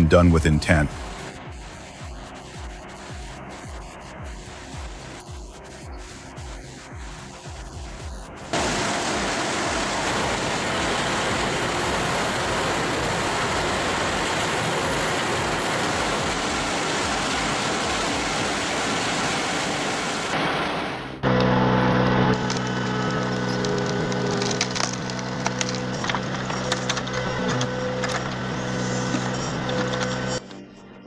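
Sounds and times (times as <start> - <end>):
heavy machinery running: 6.5 - 30.6.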